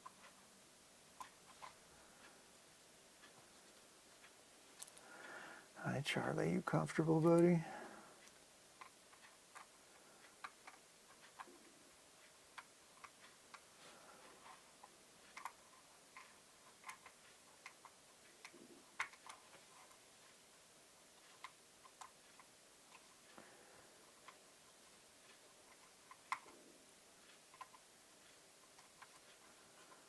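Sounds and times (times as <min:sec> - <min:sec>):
small plastic parts clicking: 0:14.4 - 0:20.4, 0:25.3 - 0:26.6.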